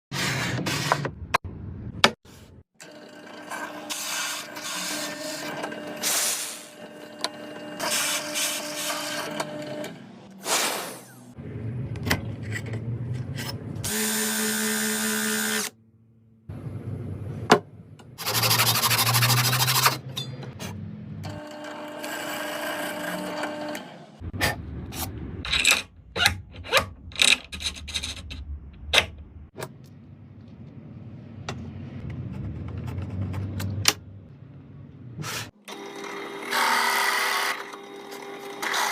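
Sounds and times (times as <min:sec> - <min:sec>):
power drill running: 0:13.9 - 0:15.7, 0:21.3 - 0:24.2, 0:35.6 - 0:38.9.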